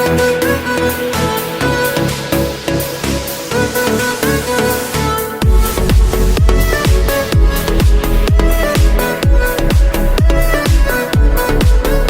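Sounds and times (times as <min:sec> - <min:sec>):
sustained synth tones: 0:02.4 - 0:10.6
kick drum beat: 0:05.4 - 0:12.0.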